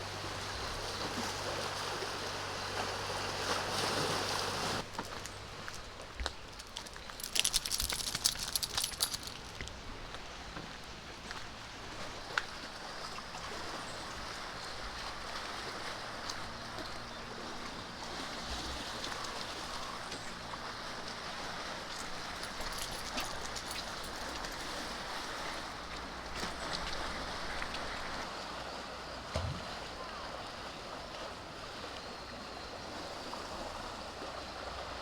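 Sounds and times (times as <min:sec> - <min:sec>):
clicks and rustles: 0:04.9 - 0:09.8, 0:21.9 - 0:24.8.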